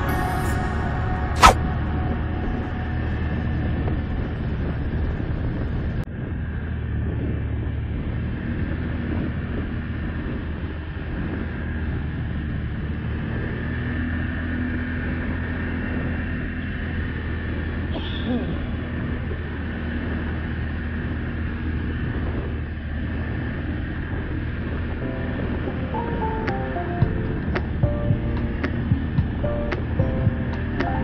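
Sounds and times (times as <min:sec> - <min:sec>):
atv engine running: 0:00.0 - 0:31.0
sharp click: 0:01.4 - 0:01.6.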